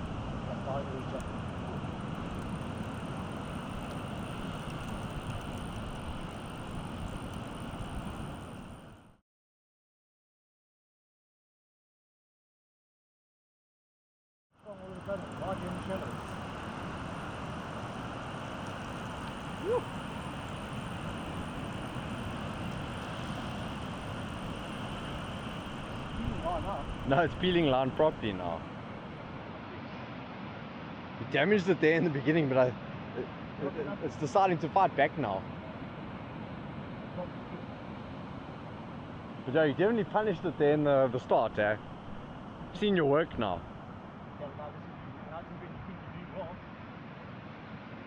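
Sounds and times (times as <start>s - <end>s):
wind rumbling on microphone: 0.0s - 9.1s, 15.2s - 28.8s.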